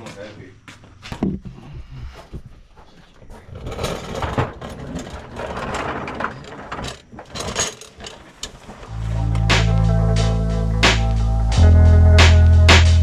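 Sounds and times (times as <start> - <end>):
metal parts clanking and scraping: 3.5 - 8.9.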